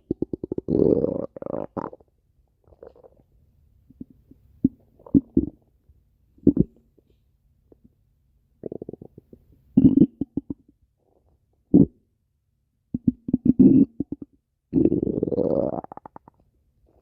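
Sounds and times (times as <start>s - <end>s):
stomach growling: 0.0s - 2.1s, 2.7s - 3.2s, 8.6s - 10.7s, 13.0s - 17.0s.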